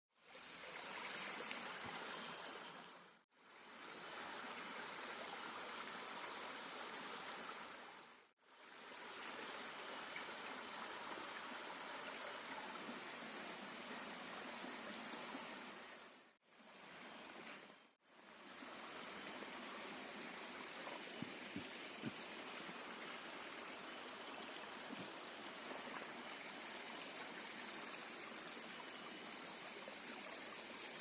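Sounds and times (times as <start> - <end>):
stream water rushing: 8.5 - 31.0.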